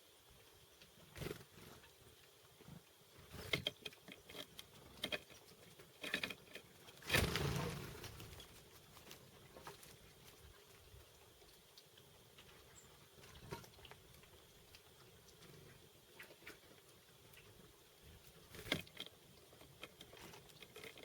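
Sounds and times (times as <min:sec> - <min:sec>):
rustling: 0:06.9 - 0:10.6.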